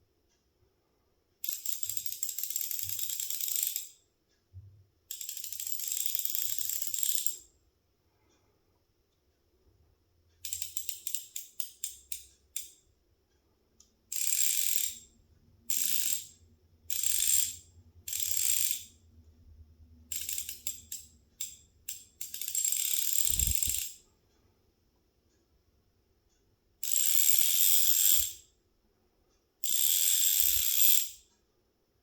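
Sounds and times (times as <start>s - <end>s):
bicycle freehub ratcheting clicks: 1.4s - 4.0s, 5.1s - 7.5s, 10.4s - 12.8s, 14.1s - 15.1s, 15.7s - 19.0s, 20.1s - 24.0s, 26.8s - 28.5s, 29.6s - 31.2s.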